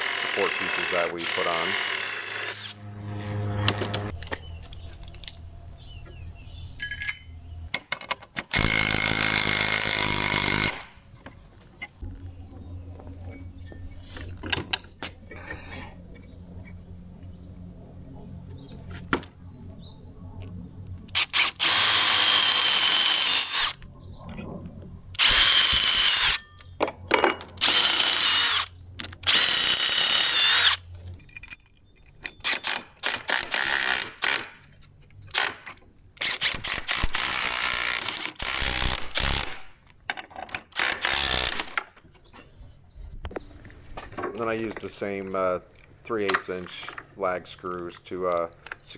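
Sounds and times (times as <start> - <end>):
power drill driving screws into wood: 0.0 - 2.7, 8.4 - 10.9, 21.1 - 23.8, 25.2 - 26.4, 27.6 - 30.8, 32.4 - 34.6, 35.3 - 39.7, 40.5 - 41.8.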